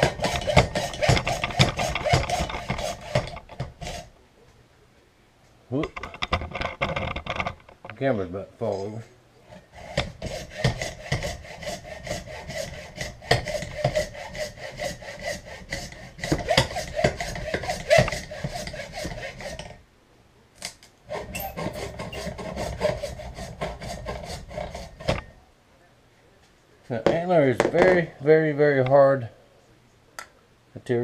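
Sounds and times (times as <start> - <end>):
handsaw cutting antler: 0.0 - 4.1, 9.5 - 19.8, 21.1 - 25.3.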